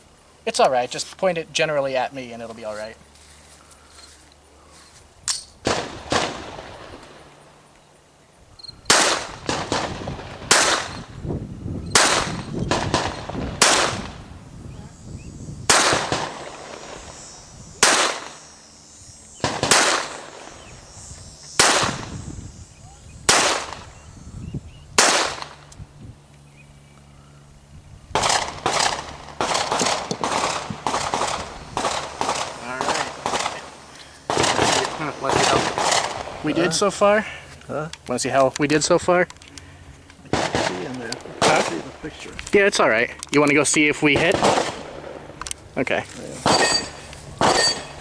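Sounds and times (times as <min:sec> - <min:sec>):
pistol shots with echo: 0:08.9 - 0:11.0, 0:11.9 - 0:14.2, 0:15.7 - 0:17.1, 0:17.8 - 0:18.4, 0:19.4 - 0:20.6, 0:21.6 - 0:22.1, 0:23.3 - 0:23.9, 0:25.0 - 0:25.6, 0:28.2 - 0:36.5, 0:40.3 - 0:42.0, 0:44.0 - 0:45.2, 0:46.4 - 0:48.0.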